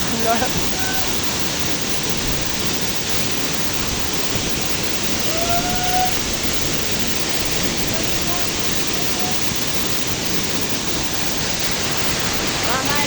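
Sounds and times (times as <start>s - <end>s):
waterfall pouring heavily: 0.0s - 13.0s
faint call: 5.1s - 9.6s.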